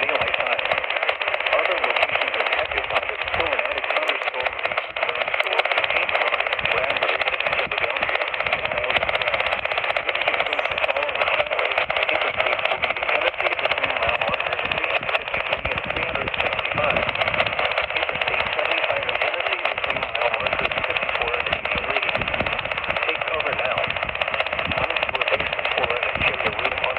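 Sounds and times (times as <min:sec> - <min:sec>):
radio static hiss: 0:00.0 - 0:26.9.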